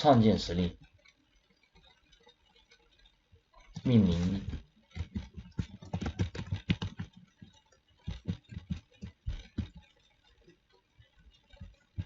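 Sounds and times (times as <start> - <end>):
typing on computer keyboard: 3.8 - 10.4.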